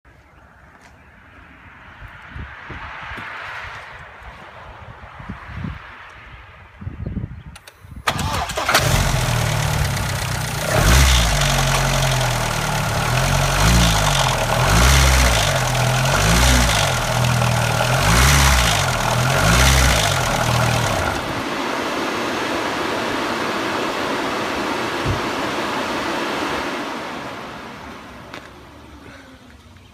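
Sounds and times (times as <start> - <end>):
car engine revving: 8.1 - 29.2.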